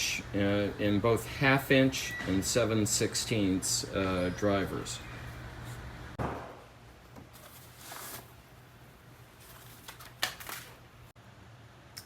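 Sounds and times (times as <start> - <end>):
soft handling scrapes and rustles: 7.3 - 8.4.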